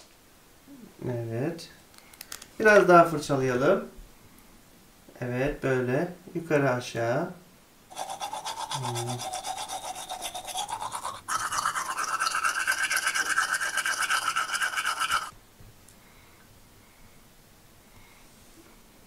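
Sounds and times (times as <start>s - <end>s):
toothbrush scrubbing plastic: 7.9s - 15.3s.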